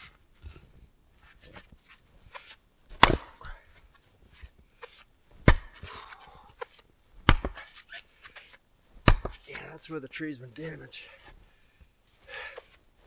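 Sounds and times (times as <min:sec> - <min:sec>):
axe striking wood: 0:02.3 - 0:03.6, 0:04.8 - 0:07.8, 0:08.4 - 0:09.5.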